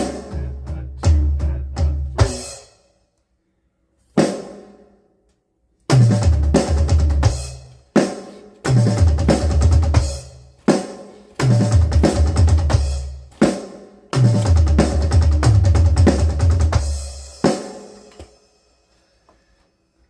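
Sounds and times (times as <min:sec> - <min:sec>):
drum kit fills: 0:00.0 - 0:02.8, 0:04.0 - 0:04.9, 0:05.9 - 0:19.3.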